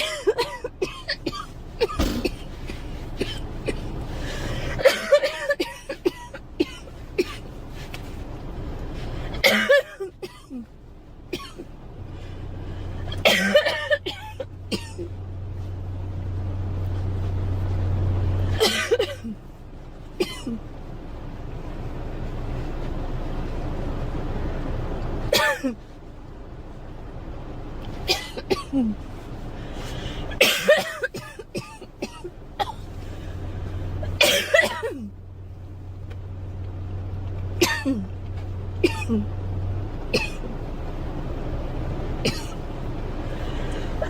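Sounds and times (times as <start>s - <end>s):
girl coughing: 0.0s - 3.8s, 4.8s - 7.4s, 9.4s - 10.7s, 13.2s - 15.1s, 18.5s - 19.4s, 20.2s - 20.6s, 25.3s - 25.8s, 28.1s - 29.0s, 30.4s - 32.8s, 34.1s - 35.1s, 37.6s - 38.1s, 38.8s - 39.3s
low steady hum: 0.0s - 44.0s.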